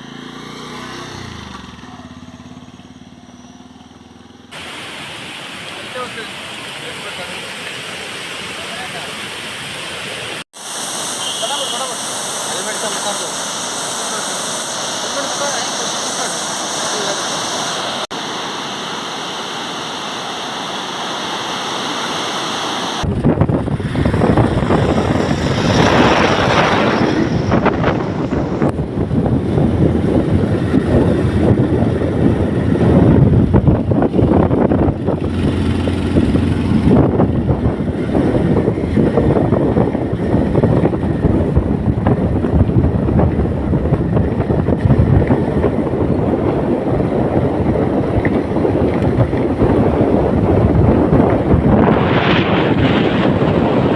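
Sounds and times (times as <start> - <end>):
waterfall rushing: 4.6 - 23.1
wind buffeting microphone: 23.0 - 53.9.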